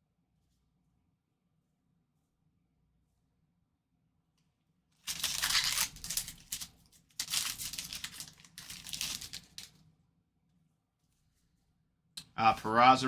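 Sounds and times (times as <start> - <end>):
wrapper tearing and crinkling: 5.0 - 9.8.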